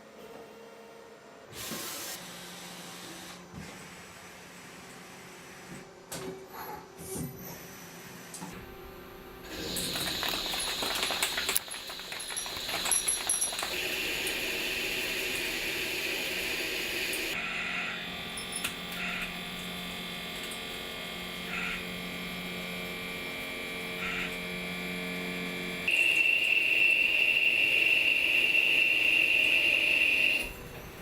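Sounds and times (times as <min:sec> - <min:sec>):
high-pitched machine whine: 0:07.5 - 0:31.0
machine hissing: 0:09.4 - 0:17.4.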